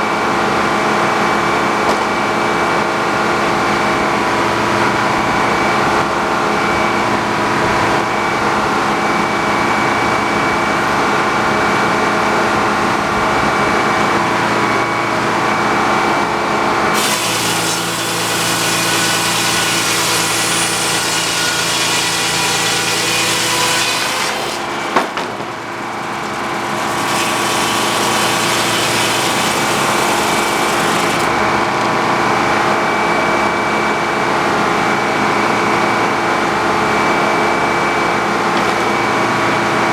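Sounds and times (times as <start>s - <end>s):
sawmill engine running: 0.0s - 39.9s
saw cutting through log: 16.9s - 31.4s.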